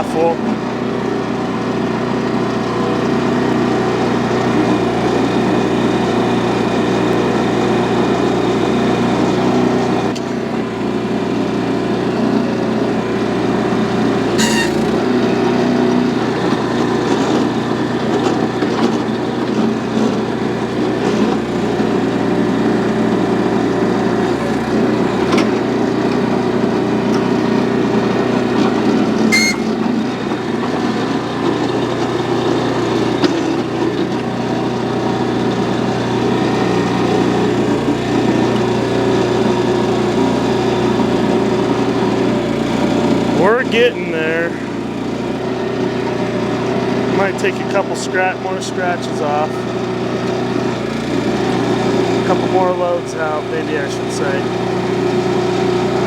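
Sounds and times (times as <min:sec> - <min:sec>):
small gasoline engine running: 0:00.0 - 0:56.0.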